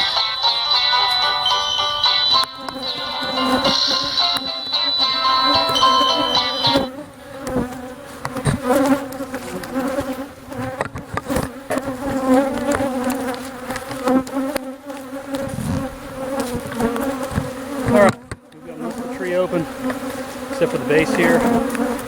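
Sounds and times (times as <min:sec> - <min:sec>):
background music: 0:00.0 - 0:06.9
honeybees buzzing: 0:00.0 - 0:22.0.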